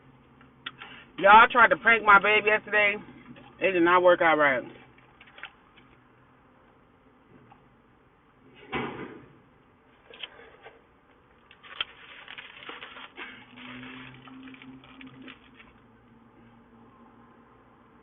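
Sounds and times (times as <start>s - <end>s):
low steady hum: 9.3s - 18.0s.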